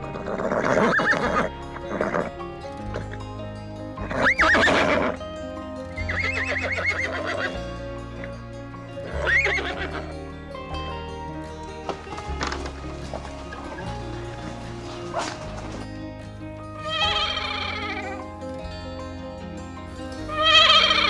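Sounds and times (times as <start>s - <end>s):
music with steady bass line: 0.0s - 21.0s
horse whinnying: 0.1s - 2.3s, 4.1s - 5.2s, 6.1s - 7.6s, 9.2s - 10.1s, 16.7s - 18.3s, 20.0s - 21.0s.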